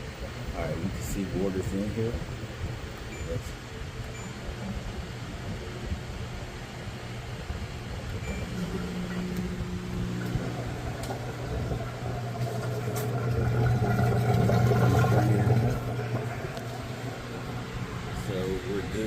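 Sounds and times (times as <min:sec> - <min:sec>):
drain pump motor hum: 0:04.0 - 0:19.0.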